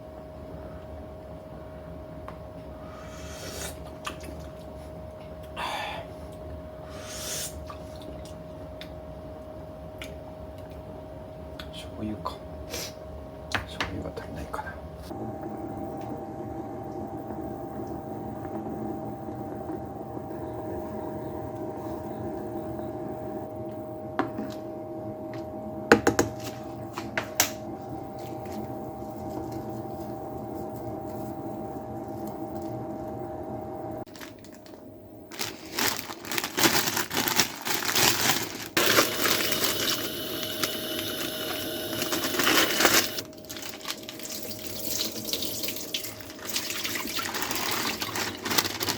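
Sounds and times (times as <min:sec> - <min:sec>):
steady hum: 0:00.0 - 0:48.9
crinkling and rustling: 0:34.1 - 0:40.8, 0:41.9 - 0:44.5, 0:46.0 - 0:48.9.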